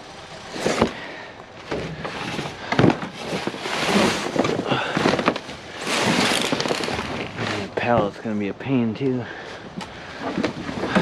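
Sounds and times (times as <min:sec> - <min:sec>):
debris rustling and scraping: 0:00.1 - 0:08.4, 0:09.6 - 0:11.0.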